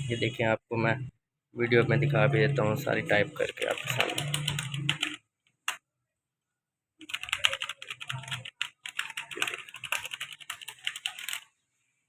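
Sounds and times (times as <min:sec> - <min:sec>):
rapid mechanical keyboard typing: 0:03.4 - 0:05.8, 0:07.0 - 0:11.5.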